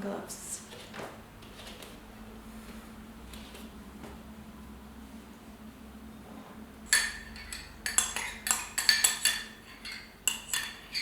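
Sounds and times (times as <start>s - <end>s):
metal spoon clinking on dish: 6.9s - 11.0s.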